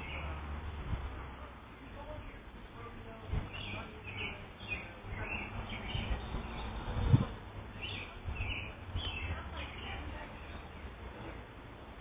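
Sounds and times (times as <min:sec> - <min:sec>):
small birds chirping: 0:00.0 - 0:00.4, 0:03.4 - 0:11.0.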